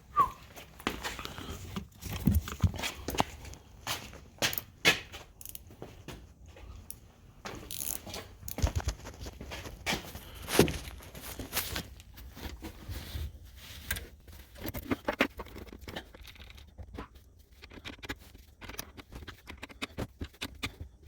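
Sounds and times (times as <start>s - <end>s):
hands handling parts: 0.2s - 21.0s.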